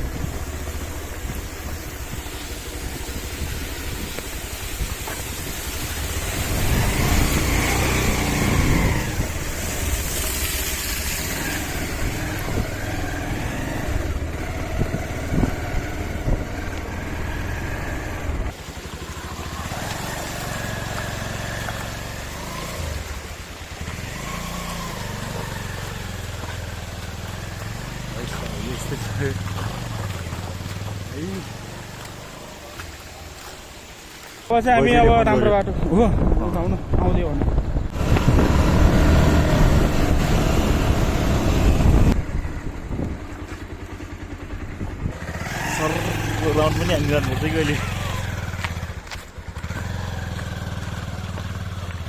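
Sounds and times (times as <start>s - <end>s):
wind noise on microphone: 0.0s - 10.4s, 11.4s - 16.7s, 34.8s - 43.5s
motorcycle engine revving: 0.0s - 33.8s, 37.5s - 52.0s.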